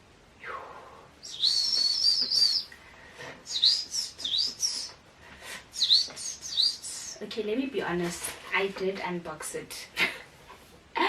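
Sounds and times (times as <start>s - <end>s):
bird chirping: 1.2s - 2.8s, 3.5s - 5.0s, 5.8s - 7.2s.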